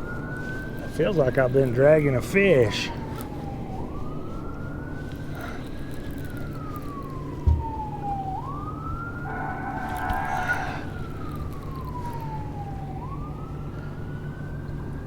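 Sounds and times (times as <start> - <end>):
siren wailing: 0.0 - 15.0
short thump: 7.4 - 7.8.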